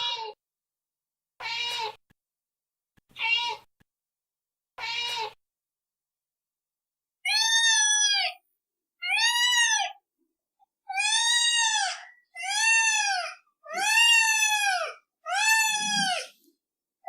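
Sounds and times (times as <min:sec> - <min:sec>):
cat meowing: 0:00.0 - 0:00.4, 0:01.4 - 0:02.0, 0:03.2 - 0:03.7, 0:07.3 - 0:08.4, 0:09.0 - 0:10.0, 0:10.9 - 0:16.4.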